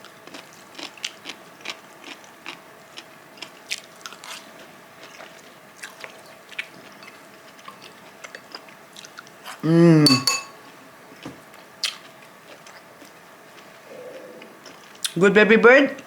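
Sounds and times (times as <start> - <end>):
eating crunches and clicks: 0.2 - 7.9.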